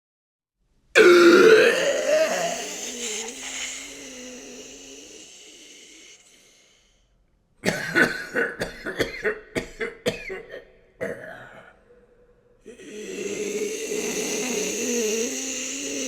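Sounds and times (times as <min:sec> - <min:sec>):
harsh coughing: 0:01.0 - 0:05.4, 0:07.6 - 0:12.1.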